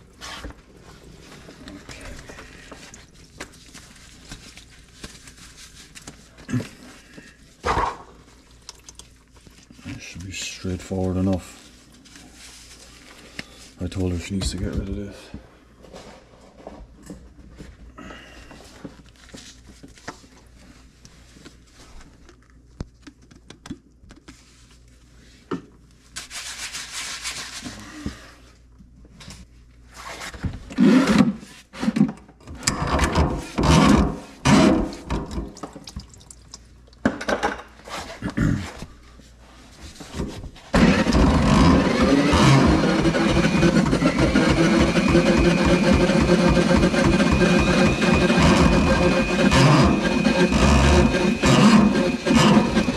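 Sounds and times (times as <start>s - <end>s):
motor running: 40.8s - 52.9s.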